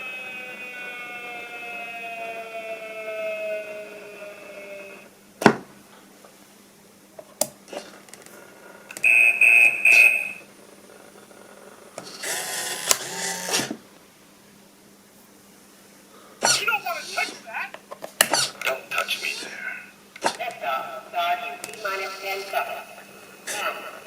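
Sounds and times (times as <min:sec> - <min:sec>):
falling electronic tone: 0:00.0 - 0:05.1, 0:09.0 - 0:10.5
buzzy hissy noise: 0:08.6 - 0:17.7, 0:18.3 - 0:24.0
short high beeps: 0:09.0 - 0:10.4.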